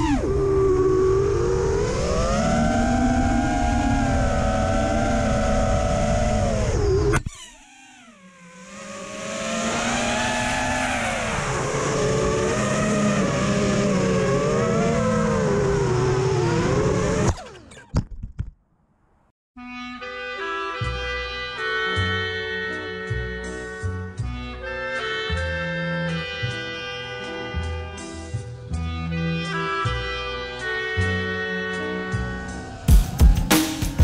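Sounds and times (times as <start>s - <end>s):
rushing rumble of propellers: 0.0s - 18.0s, 32.0s - 34.0s
drone motors whining: 0.0s - 18.1s, 29.4s - 34.0s.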